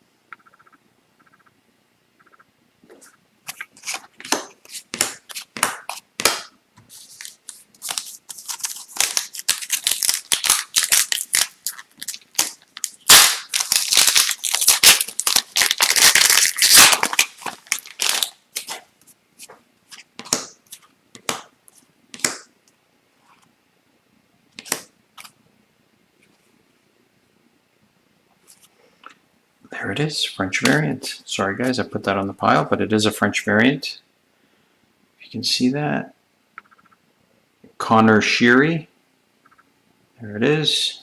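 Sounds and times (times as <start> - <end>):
cards snapping: 3.5 - 18.8, 24.6 - 25.3
wrappers crinkling and tearing: 6.9 - 18.9.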